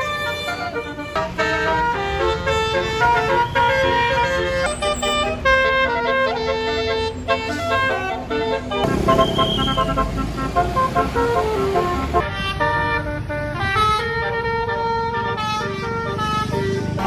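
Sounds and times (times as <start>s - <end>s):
bus engine low rumble: 0.0s - 17.0s
musical bus horn playing tune: 0.0s - 17.0s.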